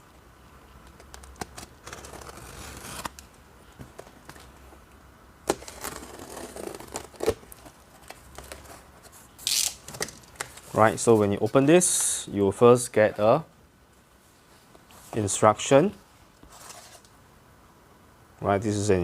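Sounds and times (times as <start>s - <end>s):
cardboard packaging rustling and tearing: 1.2s - 3.2s, 5.5s - 10.8s.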